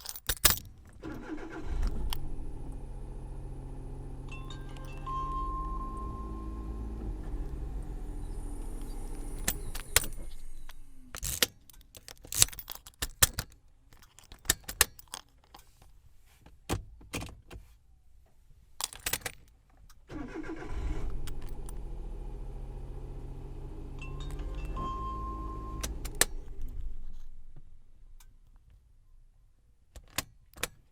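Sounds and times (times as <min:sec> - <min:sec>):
keys jangling in ignition: 0:00.0 - 0:02.3, 0:04.2 - 0:15.8, 0:18.8 - 0:19.6, 0:20.2 - 0:21.9, 0:23.9 - 0:27.6
engine starting: 0:01.0 - 0:02.8, 0:05.7 - 0:11.1, 0:20.1 - 0:22.7
vehicle engine idling: 0:01.2 - 0:11.2, 0:20.2 - 0:27.9.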